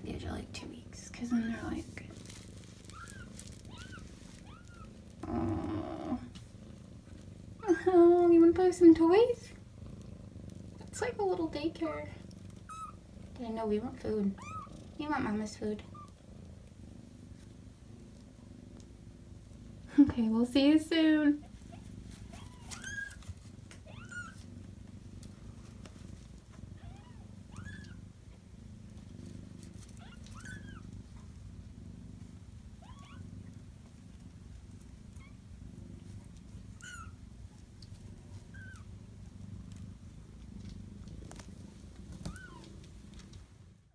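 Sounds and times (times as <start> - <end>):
cat purring: 0.0 - 43.9
kittens mewing: 2.8 - 6.4, 29.9 - 31.0, 36.8 - 37.2.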